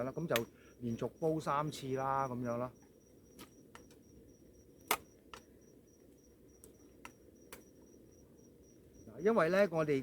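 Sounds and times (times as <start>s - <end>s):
insect chirping: 0.0s - 10.0s
sharp clicks and knocks: 4.8s - 5.5s.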